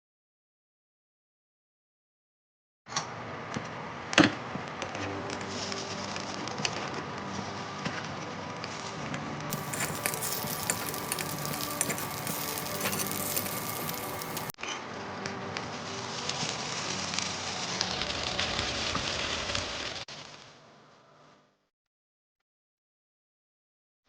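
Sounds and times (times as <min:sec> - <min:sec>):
batter sizzling in oil: 0:09.5 - 0:14.6, 0:15.8 - 0:20.3.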